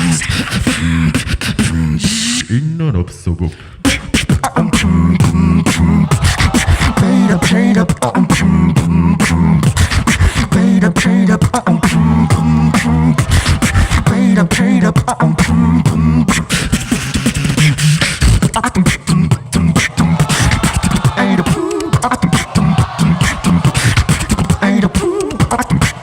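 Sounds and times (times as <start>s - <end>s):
beatbox rhythm: 0.0s - 26.0s
throaty vocal bass line: 0.0s - 26.0s.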